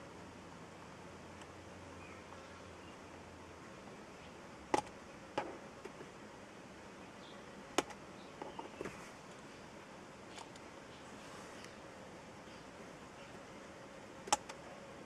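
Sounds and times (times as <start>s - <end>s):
faint steady hiss: 0.0s - 15.0s
sharp clicks: 14.2s - 14.6s.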